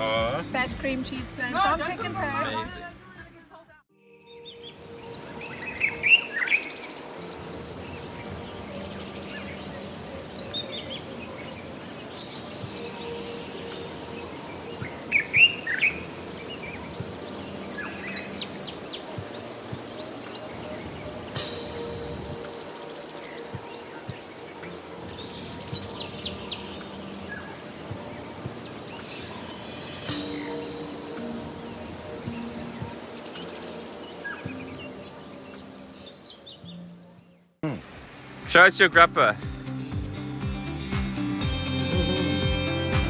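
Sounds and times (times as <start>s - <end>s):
music with held notes: 3.9s - 37.0s, 38.2s - 43.0s
steady background hiss: 4.7s - 36.1s, 37.6s - 39.9s
cymbal-like crash: 21.4s - 23.4s, 29.2s - 31.9s.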